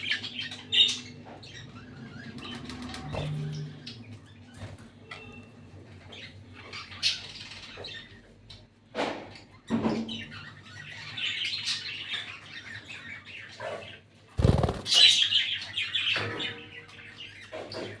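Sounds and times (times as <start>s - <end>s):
budgerigars chirping: 10.2s - 16.1s
wings flapping: 14.4s - 15.2s.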